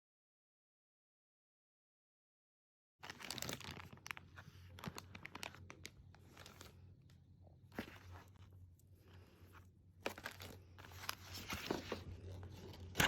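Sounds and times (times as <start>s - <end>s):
packaging crinkling and tearing: 3.0s - 7.1s, 9.9s - 13.0s.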